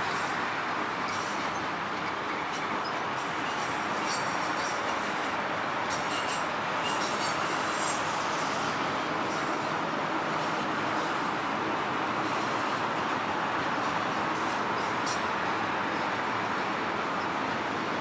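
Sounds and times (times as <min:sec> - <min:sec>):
train rolling on rails: 0:00.0 - 0:18.0
high wheel squeals: 0:01.0 - 0:08.6.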